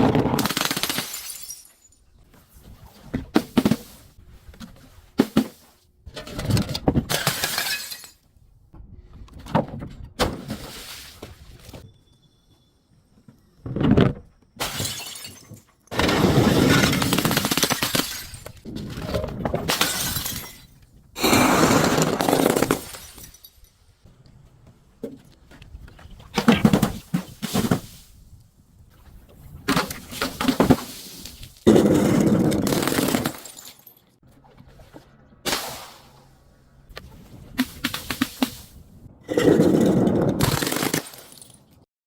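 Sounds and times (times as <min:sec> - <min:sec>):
glass bottles breaking: 0:00.4 - 0:02.1, 0:07.1 - 0:08.2, 0:14.6 - 0:18.6, 0:19.7 - 0:23.7, 0:31.7 - 0:34.0, 0:39.4 - 0:41.8.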